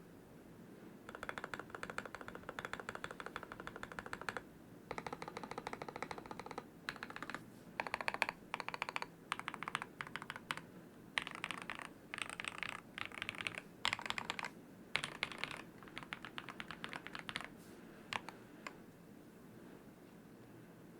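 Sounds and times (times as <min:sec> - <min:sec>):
mechanical keyboard typing: 0:01.1 - 0:10.6, 0:11.2 - 0:17.5, 0:18.1 - 0:18.8.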